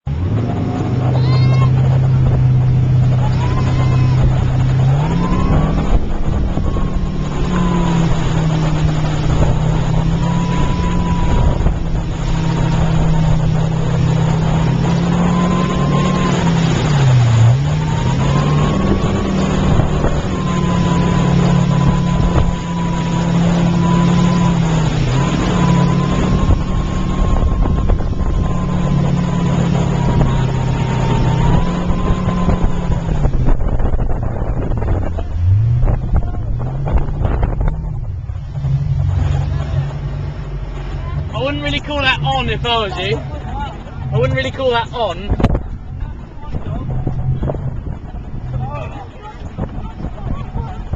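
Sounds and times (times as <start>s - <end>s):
motorboat engine running: 0.0s - 50.9s
rushing water: 0.0s - 50.9s
rushing wind: 0.0s - 50.9s.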